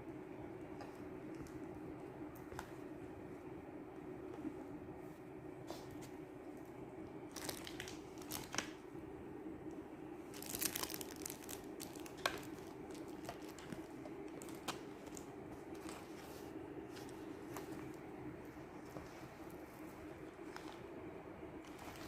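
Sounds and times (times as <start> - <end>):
bag crinkling and rustling: 7.3 - 8.8, 10.2 - 20.9, 21.6 - 22.0.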